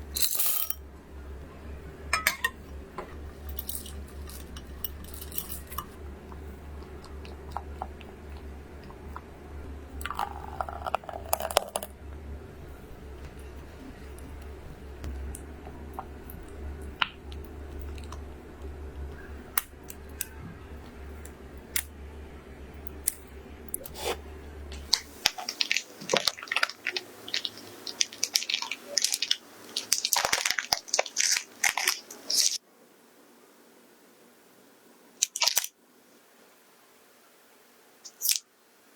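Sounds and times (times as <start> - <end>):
low hum: 0.0 - 25.3
sharp clicks and crunching: 24.7 - 32.6, 35.2 - 35.7.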